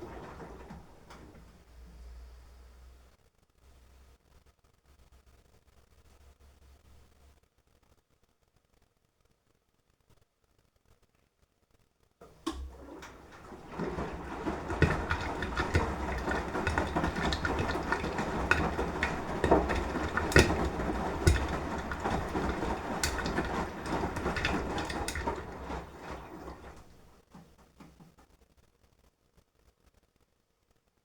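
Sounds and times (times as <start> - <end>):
wet laundry sloshing in drum: 0.0 - 1.9, 12.2 - 28.2
washing machine motor humming: 0.0 - 2.4, 12.2 - 28.2.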